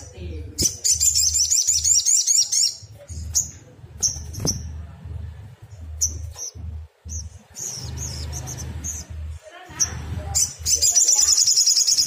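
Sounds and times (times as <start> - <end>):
low rumble: 2.8 - 11.0
bird trilling: 6.0 - 12.0.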